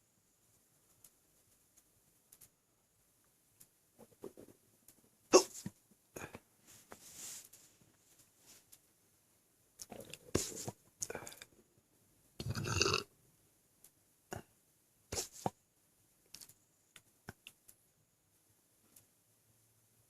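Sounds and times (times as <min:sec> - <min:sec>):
man burping: 0:12.4 - 0:13.1.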